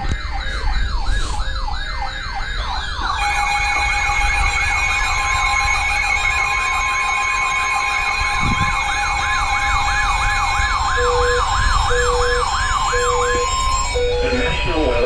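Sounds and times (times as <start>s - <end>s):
wailing siren sweep: 0.0s - 15.0s
high electronic tone: 3.0s - 15.0s
short low beeps: 7.2s - 15.0s.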